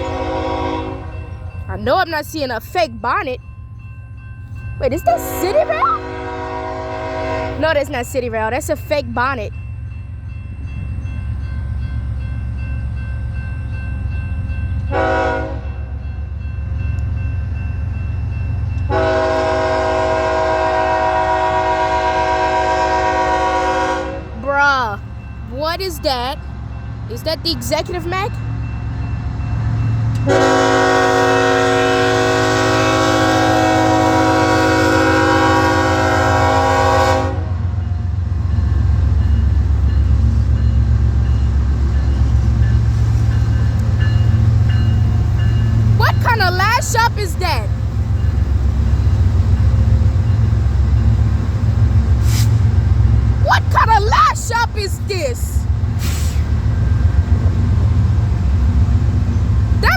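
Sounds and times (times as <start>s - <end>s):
locomotive air horn blast: 0.0s - 1.1s, 6.0s - 7.6s, 14.9s - 15.6s, 18.9s - 24.4s, 30.3s - 37.6s, 52.2s - 52.6s
diesel engines rumbling: 18.9s - 34.7s, 38.1s - 59.9s.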